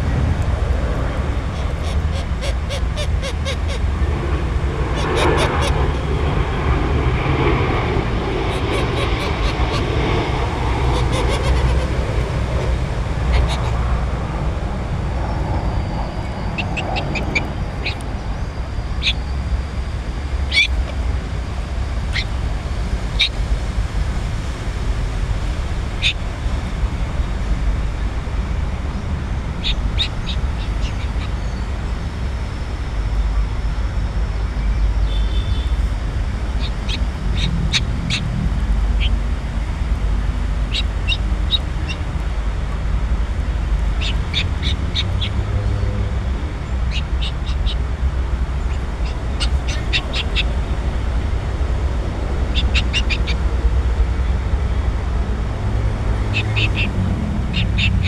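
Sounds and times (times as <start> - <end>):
steady low rumble: 0.0 - 58.0
cockatoo calling: 1.3 - 4.0, 4.8 - 6.2, 8.4 - 14.4, 15.2 - 19.6, 20.4 - 21.3, 23.1 - 23.4, 29.5 - 31.6, 40.6 - 42.1, 46.6 - 47.9, 48.6 - 51.2, 52.3 - 53.6, 56.2 - 58.0.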